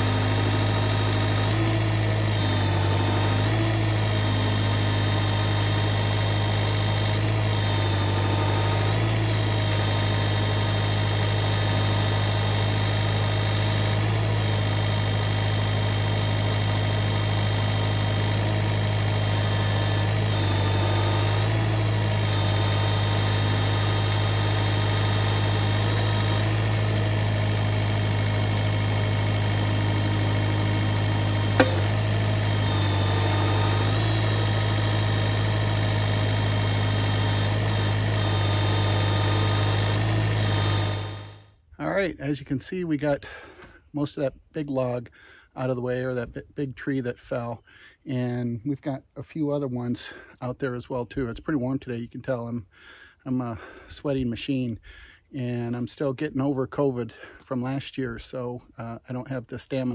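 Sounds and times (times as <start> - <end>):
tractor diesel engine running: 0.0 - 41.5.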